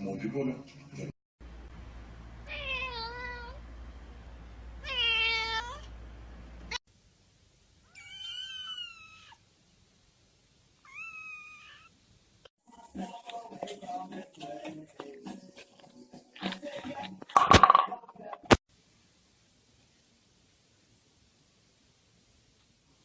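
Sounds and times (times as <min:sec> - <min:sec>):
cat meowing: 0:02.4 - 0:03.6, 0:04.8 - 0:05.9, 0:07.9 - 0:09.4, 0:10.8 - 0:11.9.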